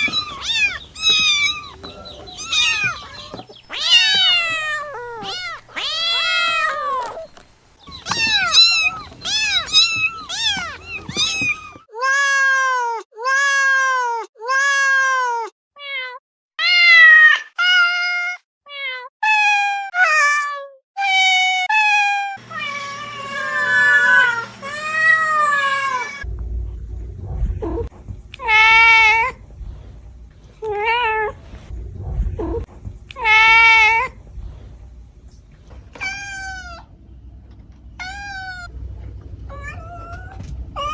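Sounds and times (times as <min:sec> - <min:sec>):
cats meowing: 0:00.0 - 0:17.8, 0:21.1 - 0:26.3, 0:35.9 - 0:36.9, 0:38.0 - 0:38.7, 0:39.5 - 0:40.9
low background rumble: 0:22.5 - 0:40.9.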